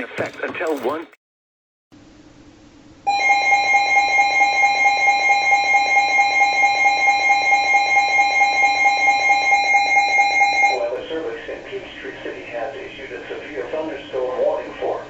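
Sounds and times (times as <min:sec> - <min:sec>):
faint radio static: 0:00.0 - 0:01.2, 0:10.8 - 0:15.0.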